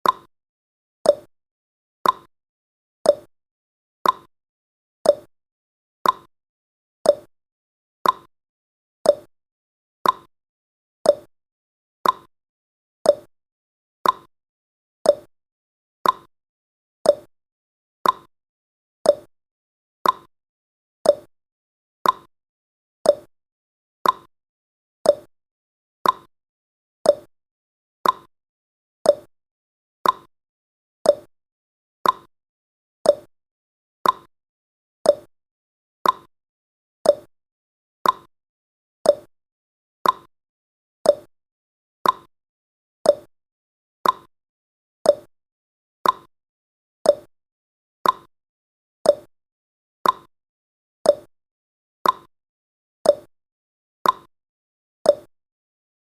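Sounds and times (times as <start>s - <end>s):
clock ticking: 34.0s - 34.3s, 38.0s - 38.3s, 40.0s - 40.3s, 42.0s - 42.3s, 44.0s - 44.3s, 46.0s - 46.3s, 48.0s - 48.3s.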